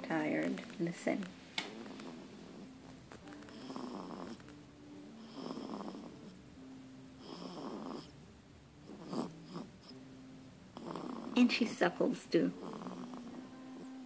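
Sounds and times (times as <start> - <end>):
faint steady hum: 0.0 - 14.0
soft snoring: 1.6 - 4.5, 5.1 - 6.4, 7.2 - 8.2, 8.8 - 10.0, 10.7 - 11.7, 12.4 - 14.0.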